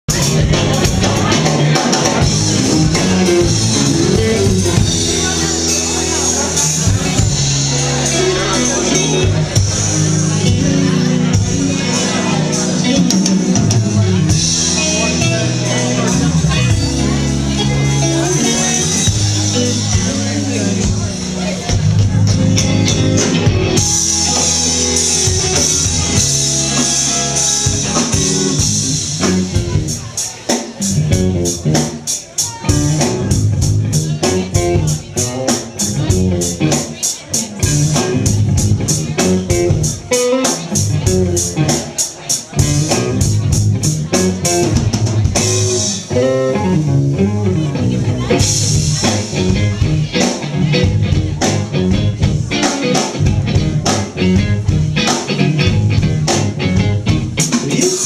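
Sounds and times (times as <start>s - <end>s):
rock band playing live: 0.0s - 58.0s
drum strikes: 0.1s - 17.1s.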